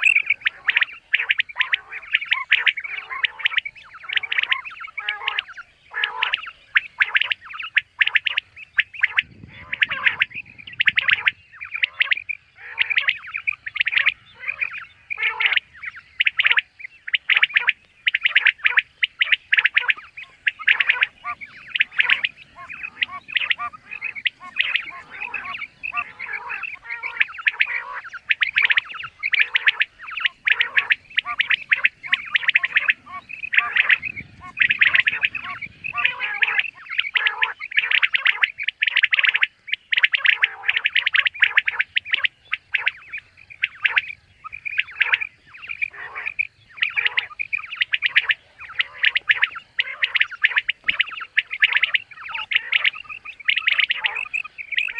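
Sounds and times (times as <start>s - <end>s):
quail calling: 0.0s - 54.9s.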